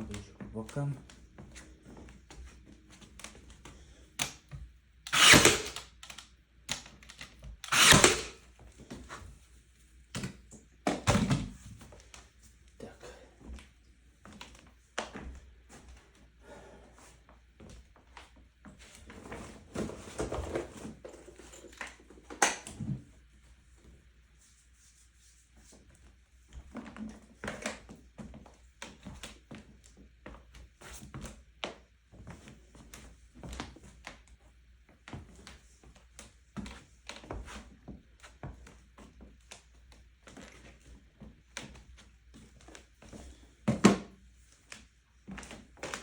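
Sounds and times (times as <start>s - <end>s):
tools clicking and knocking: 5.1s - 8.4s.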